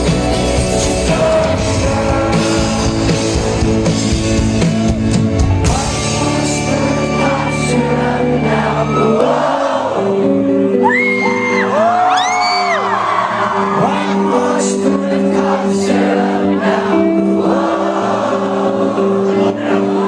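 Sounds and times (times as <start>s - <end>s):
deep bass: 0.0s - 8.1s
live rock band playing: 0.0s - 20.0s
person singing: 0.0s - 20.0s
audience whooping and shouting: 10.8s - 14.5s.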